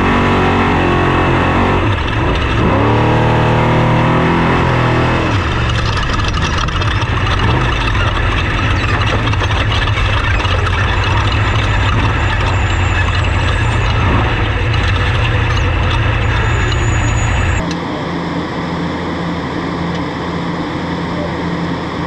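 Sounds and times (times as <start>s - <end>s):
dense rattling and rushing: 0.0s - 17.7s
truck engine low drone: 0.0s - 22.0s.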